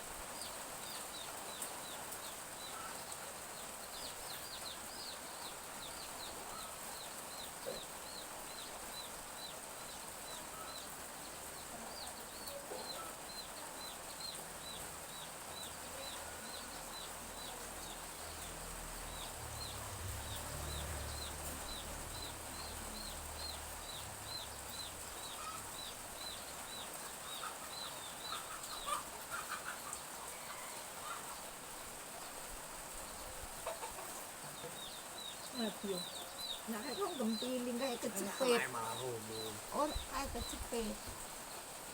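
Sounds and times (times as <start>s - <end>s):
light drizzle hiss: 0.0s - 41.9s
chicks peeping: 19.2s - 31.4s, 33.5s - 41.2s
chicken clucking: 27.2s - 31.4s, 33.6s - 35.0s.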